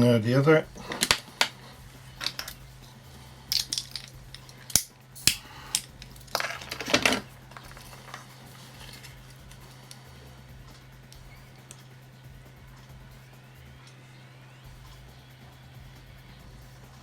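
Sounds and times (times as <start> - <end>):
low steady hum: 0.0 - 17.0
clicks and knocks of handling: 3.5 - 10.0.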